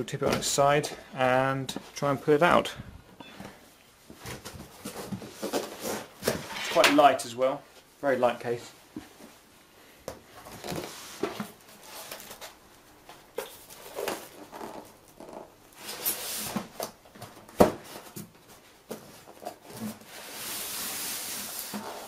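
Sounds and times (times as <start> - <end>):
cardboard and polystyrene rustling: 4.1 - 7.1, 10.4 - 12.6, 13.2 - 15.0, 15.7 - 22.0.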